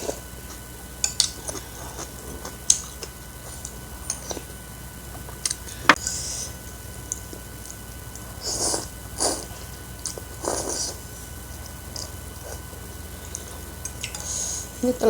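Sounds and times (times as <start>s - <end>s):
mouth sounds of eating: 7.1s - 15.0s.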